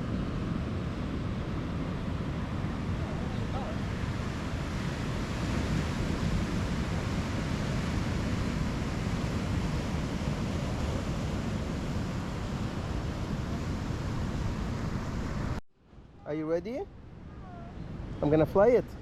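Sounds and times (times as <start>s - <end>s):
ocean surf: 0.0s - 15.6s, 16.2s - 19.0s
wind buffeting microphone: 0.0s - 15.6s.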